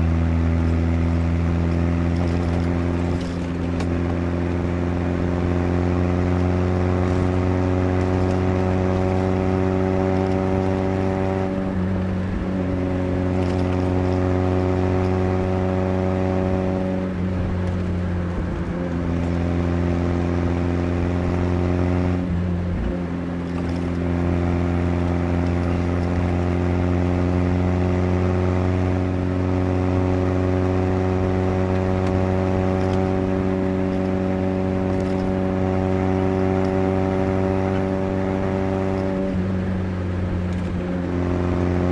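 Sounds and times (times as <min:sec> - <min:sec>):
car engine pulling: 0:00.0 - 0:41.9.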